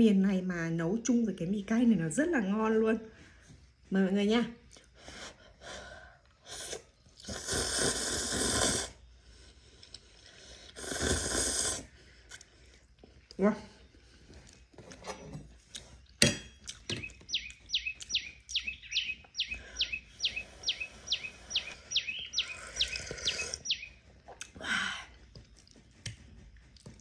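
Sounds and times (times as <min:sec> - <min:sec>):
bird chirping descending notes: 0:17.0 - 0:24.0.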